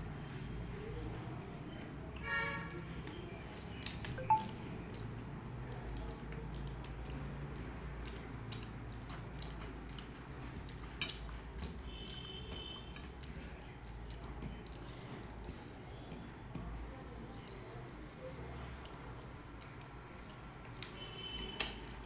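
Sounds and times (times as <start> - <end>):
wet chewing: 0.1 - 22.0
brief high tone: 4.2 - 4.5.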